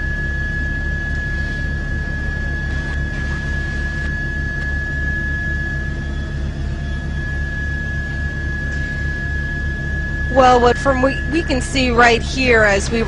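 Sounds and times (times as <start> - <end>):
helicopter cabin drone: 0.0 - 13.0
high-pitched whine: 0.0 - 13.0.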